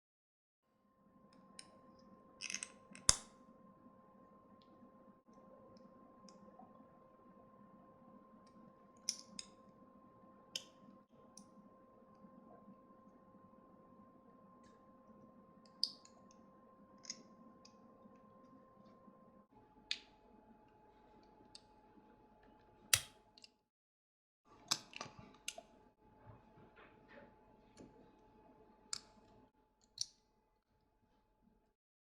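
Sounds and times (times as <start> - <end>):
faint steady hum: 0.7 - 22.9.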